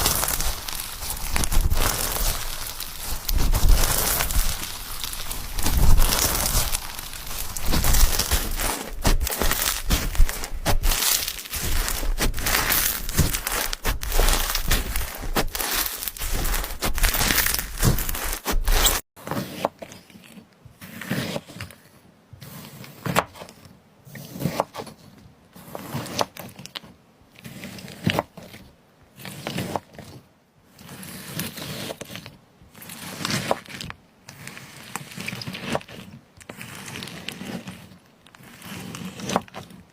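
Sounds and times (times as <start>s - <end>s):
slime crackling and popping: 0.0s - 19.0s
slime squishing: 0.0s - 19.0s, 31.4s - 39.7s.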